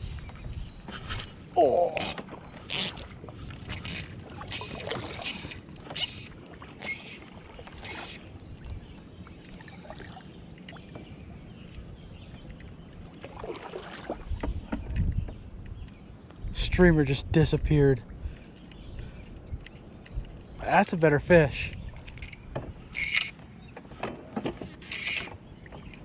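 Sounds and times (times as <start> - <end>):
wind rumble on microphone: 0.0 - 6.7, 7.4 - 24.7
river water splashing: 0.9 - 11.9, 12.7 - 14.7.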